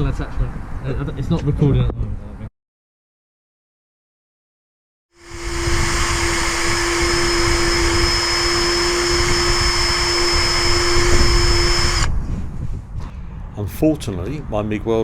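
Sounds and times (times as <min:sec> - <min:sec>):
power tool motor whining: 0:05.2 - 0:12.1.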